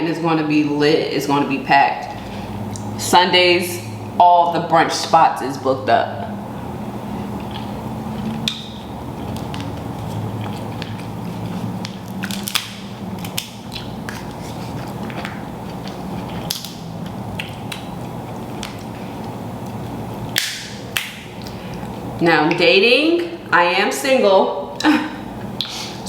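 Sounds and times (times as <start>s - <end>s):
steady low hum: 0.0s - 26.0s
chewing and crunching: 7.1s - 20.5s
wet mouth clicks and smacks: 11.8s - 14.4s, 15.0s - 21.9s, 25.6s - 25.8s.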